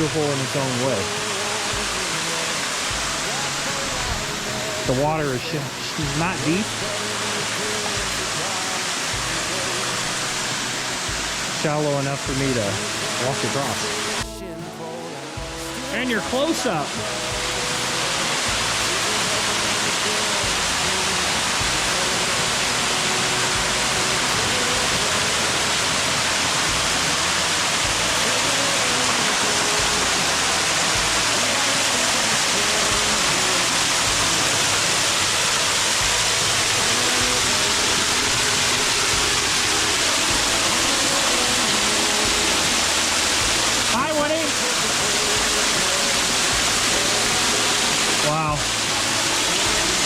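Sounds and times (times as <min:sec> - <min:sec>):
waterfall rushing: 0:00.0 - 0:50.0.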